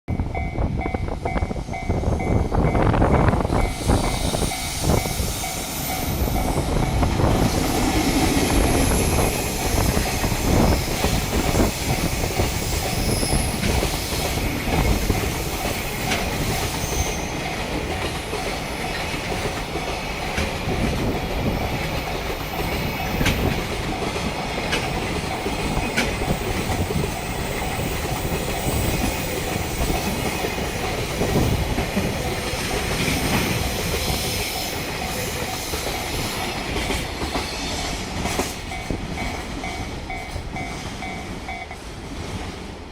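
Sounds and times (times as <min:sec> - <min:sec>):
train wheels clattering over rail joints: 0:03.6 - 0:42.1.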